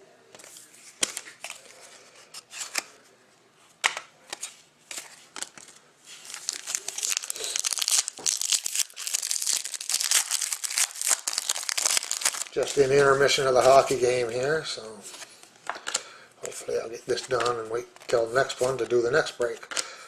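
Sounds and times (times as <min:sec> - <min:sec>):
plastic wrapping crinkling: 0:05.4 - 0:14.2.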